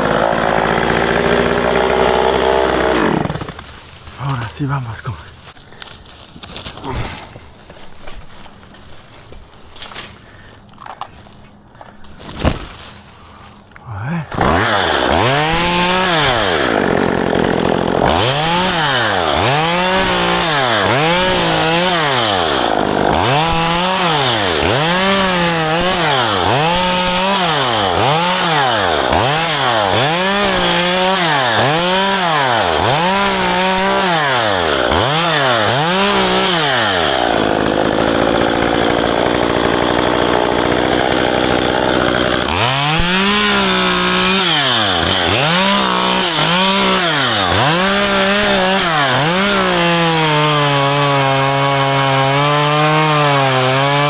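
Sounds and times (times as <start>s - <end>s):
chainsaw engine revving: 0.0s - 4.4s, 14.0s - 54.0s.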